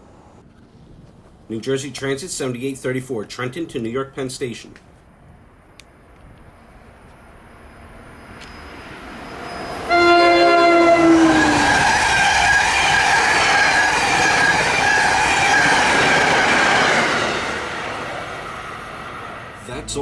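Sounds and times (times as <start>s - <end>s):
passing train rushing and rolling: 5.6s - 20.0s
train horn: 9.5s - 16.3s.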